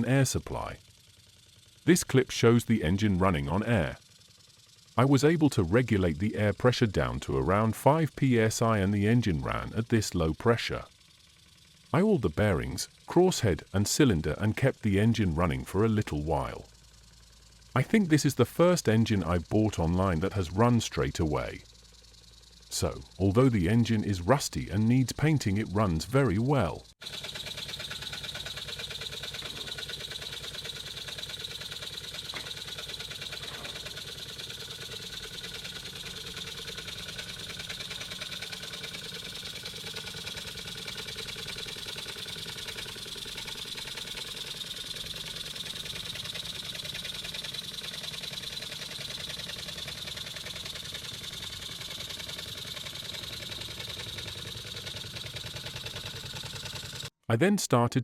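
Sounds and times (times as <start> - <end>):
steam engine exhaust beat: 25.1 - 57.1.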